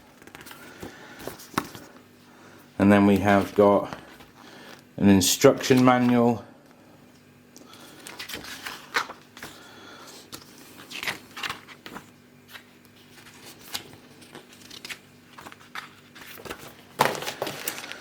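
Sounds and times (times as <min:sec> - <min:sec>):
faint steady hum: 0:00.0 - 0:18.0
packaging rustling and crinkling: 0:07.8 - 0:09.6, 0:10.2 - 0:18.0.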